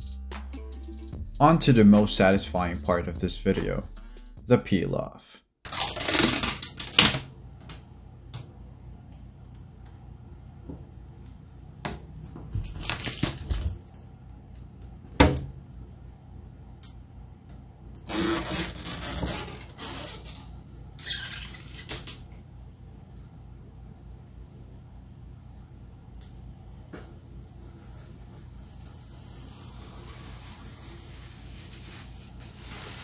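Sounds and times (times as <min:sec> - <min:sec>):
plastic film peeling with crackling rip: 0:05.7 - 0:07.3, 0:12.6 - 0:13.8, 0:18.0 - 0:22.2, 0:29.1 - 0:33.0.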